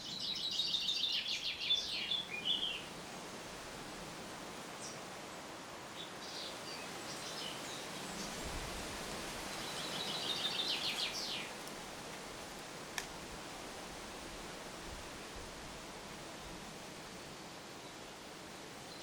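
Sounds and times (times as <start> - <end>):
steady outdoor hiss: 0.0 - 19.0
wild birds chirping and trilling: 6.0 - 8.5, 9.4 - 11.6.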